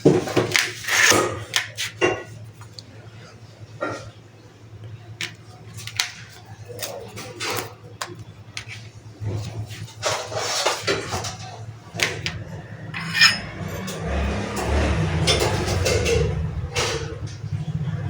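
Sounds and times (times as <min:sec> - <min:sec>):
scraping noises: 0:12.0 - 0:14.7.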